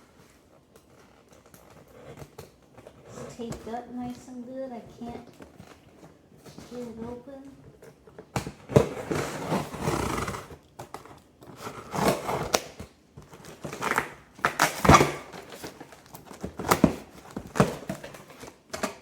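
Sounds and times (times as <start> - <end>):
cardboard rustling: 0.0 - 19.0
packing tape ripping: 8.4 - 19.0.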